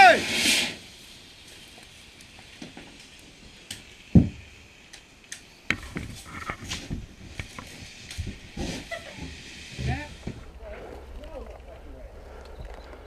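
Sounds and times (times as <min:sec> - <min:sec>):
heavy thump: 0:04.1 - 0:04.4.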